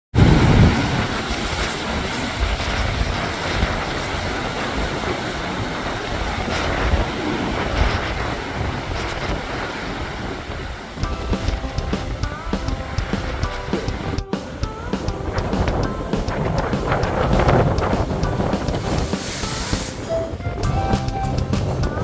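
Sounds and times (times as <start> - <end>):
wind buffeting microphone: 0.1 - 22.0.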